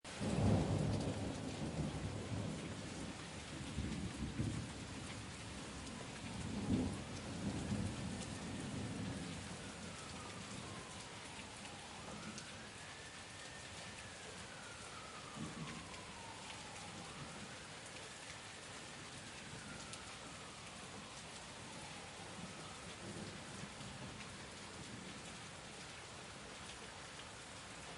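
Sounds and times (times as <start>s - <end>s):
steady rain falling: 0.0s - 27.9s
low thunder rumbling: 0.2s - 10.9s, 14.1s - 17.5s.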